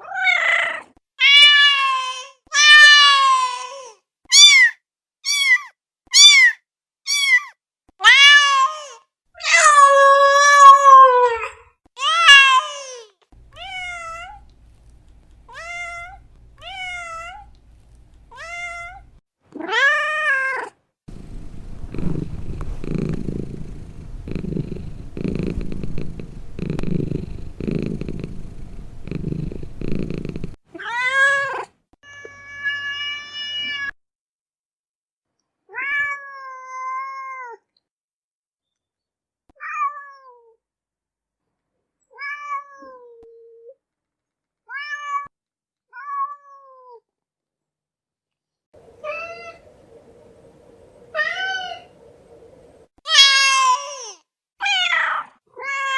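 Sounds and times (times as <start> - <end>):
cat and kitten meowing: 21.1 - 30.6
cat purring: 21.1 - 30.6.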